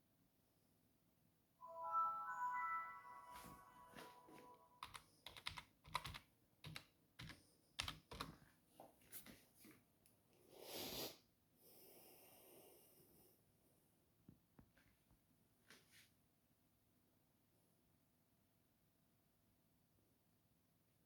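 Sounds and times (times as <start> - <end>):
keyboard typing: 4.0 - 8.4.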